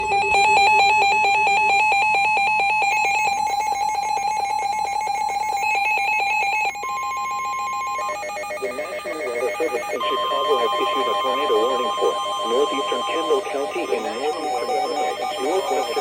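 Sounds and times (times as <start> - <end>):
steady high alert tone: 7.0 - 16.0.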